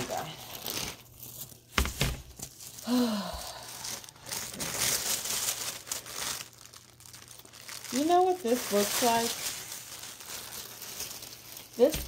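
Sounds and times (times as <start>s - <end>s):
packaging crinkling and rustling: 0.0s - 12.0s
person sighing: 2.8s - 4.2s.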